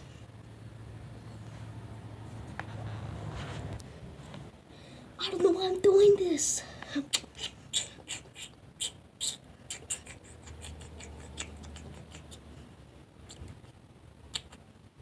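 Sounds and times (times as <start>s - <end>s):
rustling: 1.2s - 4.6s.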